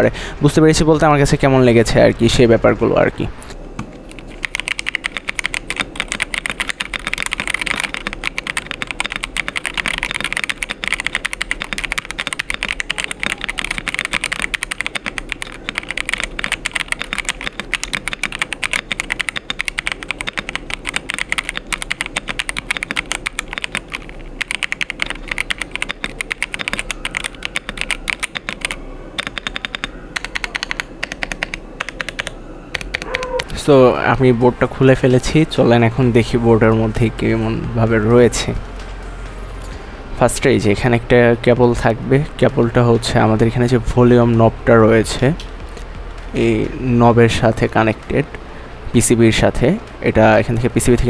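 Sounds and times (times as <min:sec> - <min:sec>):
mechanical keyboard typing: 0:04.1 - 0:33.5.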